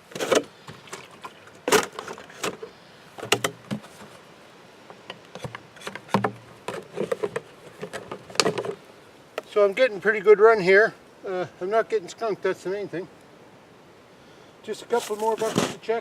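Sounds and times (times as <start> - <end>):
buckets being handled: 0.0 - 4.3, 4.9 - 9.5, 14.9 - 15.9
footsteps through snow: 14.9 - 15.8.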